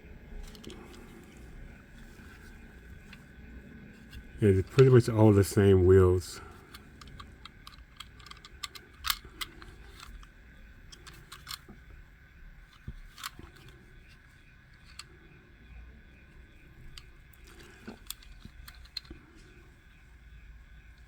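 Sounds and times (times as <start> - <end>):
toy car clicks and taps: 7.0 - 10.3, 11.0 - 11.7, 12.8 - 13.7, 17.0 - 19.2.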